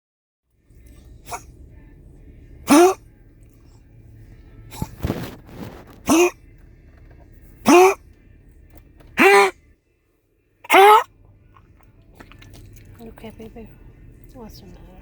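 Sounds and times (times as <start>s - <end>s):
pet coughing: 1.2s - 1.6s, 2.6s - 3.1s, 4.7s - 5.2s, 5.9s - 6.6s, 7.6s - 8.1s, 9.2s - 9.6s, 10.6s - 11.1s.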